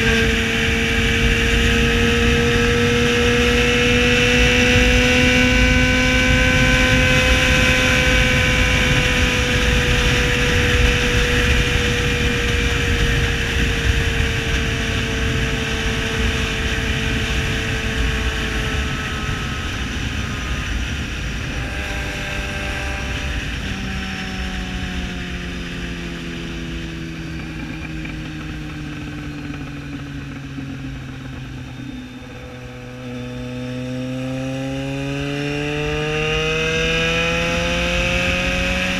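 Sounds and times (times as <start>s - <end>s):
motorcycle engine at high revs: 0.0s - 38.9s.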